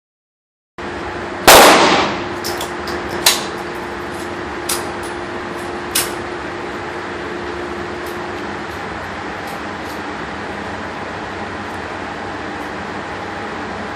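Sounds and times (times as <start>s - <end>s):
steady background hum: 0.8s - 13.9s
gunshot: 1.5s - 2.3s.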